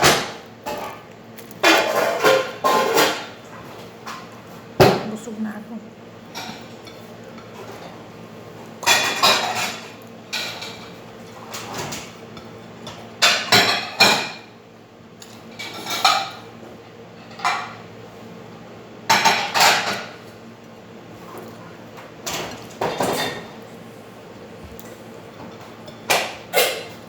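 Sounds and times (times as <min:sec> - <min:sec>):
clatter of dishes and utensils: 0:00.0 - 0:05.2, 0:06.3 - 0:08.0, 0:08.8 - 0:14.6, 0:15.2 - 0:17.8, 0:19.1 - 0:20.3, 0:21.3 - 0:23.6, 0:25.4 - 0:27.0.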